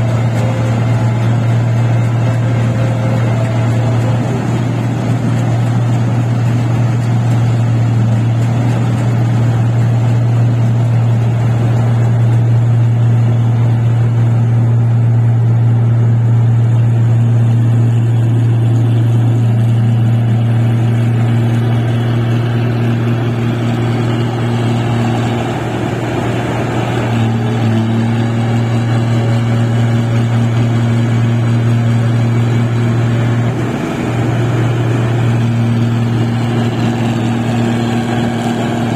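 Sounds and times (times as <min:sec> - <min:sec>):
machine engine drone: 0:00.0 - 0:38.9.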